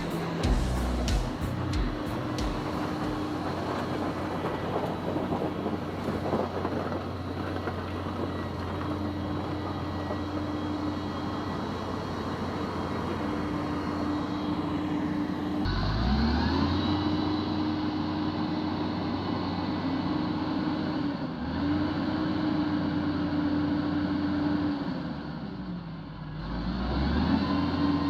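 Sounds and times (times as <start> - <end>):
humming tone: 0.0 - 4.5.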